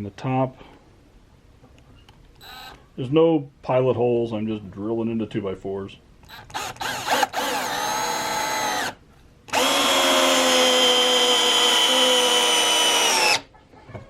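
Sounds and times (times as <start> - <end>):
cordless drill driving a screw: 6.3 - 13.5.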